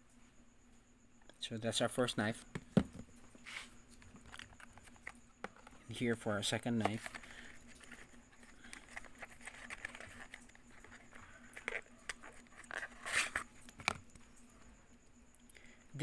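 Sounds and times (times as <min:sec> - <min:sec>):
low steady hum: 0:00.0 - 0:16.0
knife handling clicks and rustles: 0:06.6 - 0:14.5.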